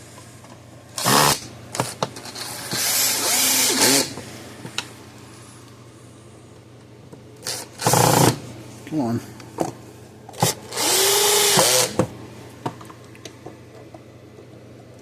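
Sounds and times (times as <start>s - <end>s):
cordless drill driving screws: 2.6s - 4.2s, 10.4s - 12.0s.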